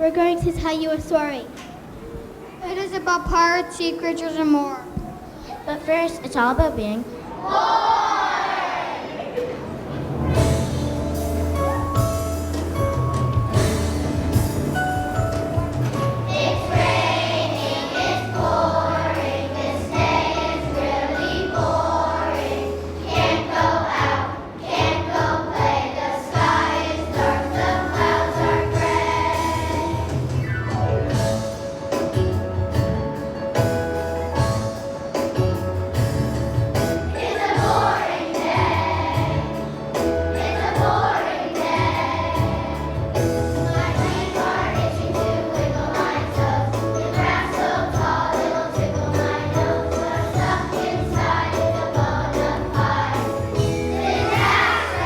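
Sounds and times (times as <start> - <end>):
children's choir singing: 5.2 - 11.0, 15.0 - 30.5, 36.8 - 55.0
instrumental accompaniment with beat: 10.4 - 20.8, 24.8 - 55.0.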